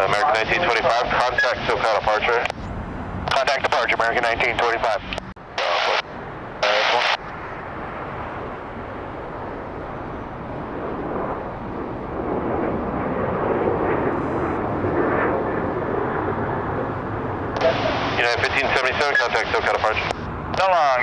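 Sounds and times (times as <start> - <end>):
jet airliner engine rush: 0.0 - 21.0
radio static burst: 0.2 - 7.2, 17.6 - 21.0.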